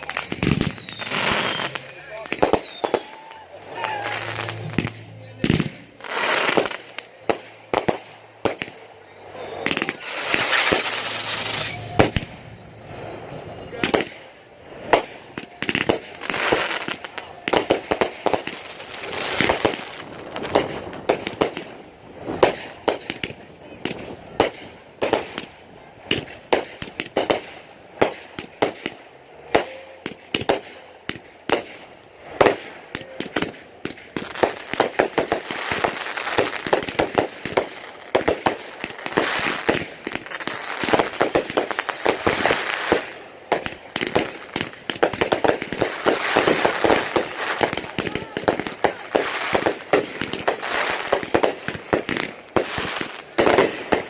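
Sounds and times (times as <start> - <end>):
fireworks bangs and crackles: 0.0 - 54.0.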